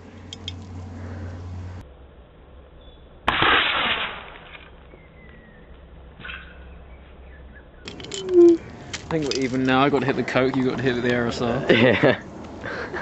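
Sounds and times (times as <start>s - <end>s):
air rifle shot: 3.3s - 4.6s.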